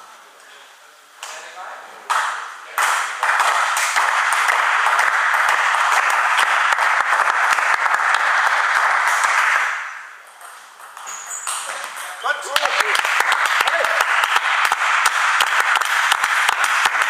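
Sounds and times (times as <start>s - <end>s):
spectators applauding: 3.2s - 9.8s, 12.2s - 17.0s.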